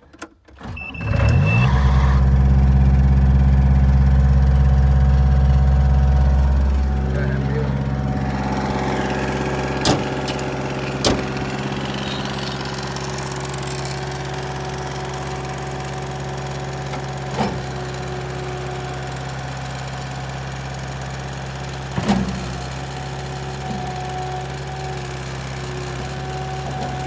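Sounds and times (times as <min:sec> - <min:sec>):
diesel engine idling: 0:01.0 - 0:27.0
sharp clicks or knocks: 0:09.8 - 0:11.4.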